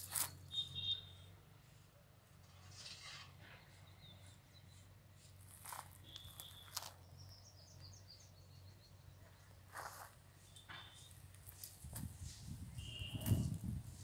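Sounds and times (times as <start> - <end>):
faint bird chirps: 6.0 - 9.6, 10.4 - 11.2.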